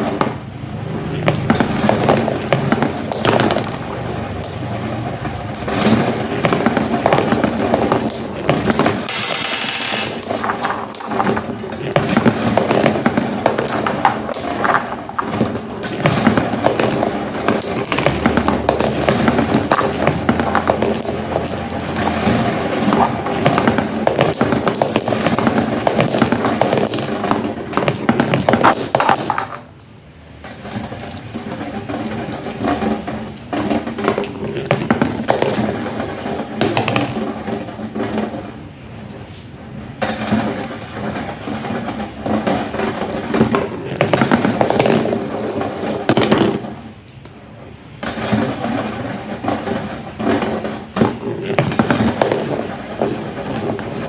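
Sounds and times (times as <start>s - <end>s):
marbles rattling down marble run: 0.0s - 29.6s.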